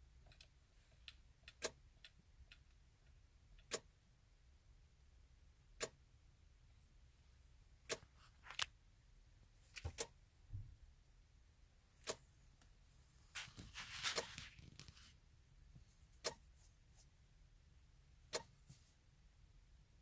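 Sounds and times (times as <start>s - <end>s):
rustling: 13.1s - 15.2s.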